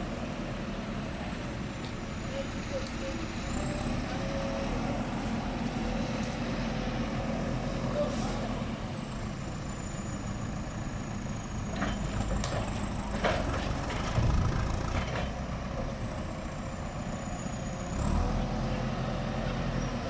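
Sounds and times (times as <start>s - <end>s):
diesel engine running: 0.0s - 20.0s
knocks and clanks: 11.8s - 15.4s.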